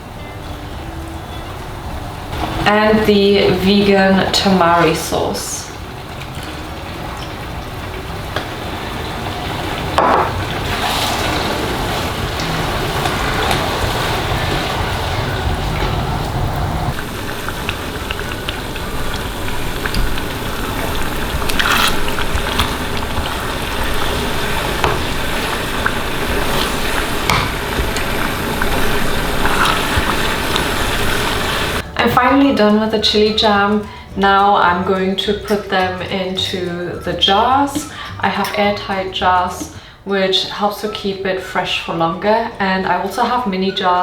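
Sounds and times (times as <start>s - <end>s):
jam sizzling and bubbling: 0.0s - 44.0s
stirring knocks and scrapes: 16.9s - 31.8s.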